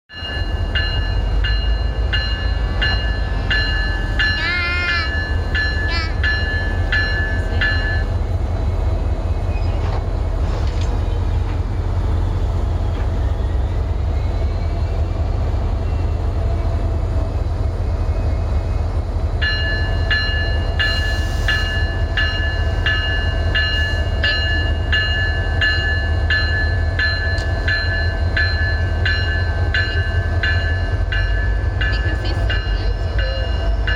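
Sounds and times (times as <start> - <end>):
train rumbling: 0.1 - 33.9.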